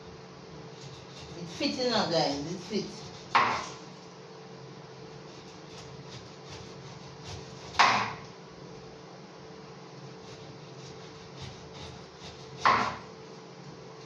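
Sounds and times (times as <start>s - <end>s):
knife chopping onto wooden board: 3.1s - 3.8s, 5.8s - 8.2s, 11.4s - 13.0s.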